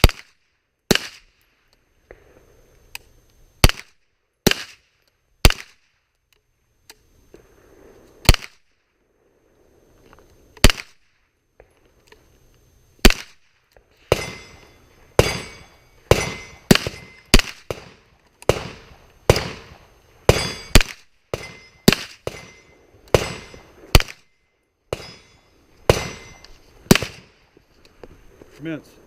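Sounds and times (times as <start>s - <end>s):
gunshots with echo: 15.2s - 24.2s.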